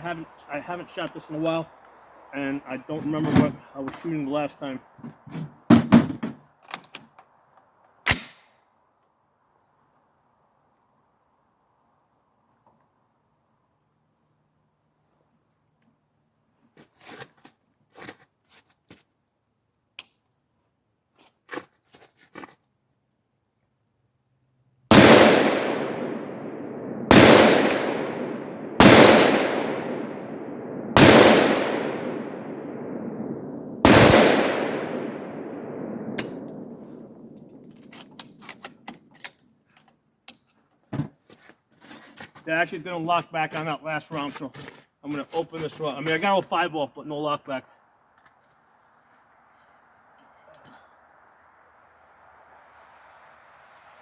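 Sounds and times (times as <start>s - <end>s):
rifle shots with echo: 24.9s - 37.6s.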